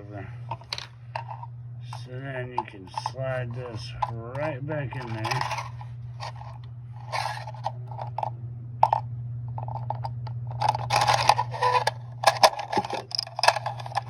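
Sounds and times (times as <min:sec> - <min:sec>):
steady low hum: 0:00.0 - 0:14.0
magazine spring scraping and clicking: 0:07.1 - 0:07.7, 0:10.6 - 0:14.0.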